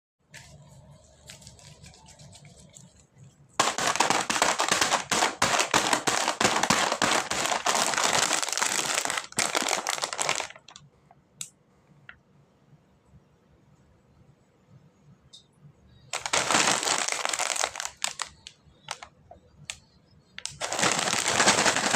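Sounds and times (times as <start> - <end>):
plastic packaging crinkling: 0.4 - 10.8, 16.1 - 19.1, 20.4 - 21.9.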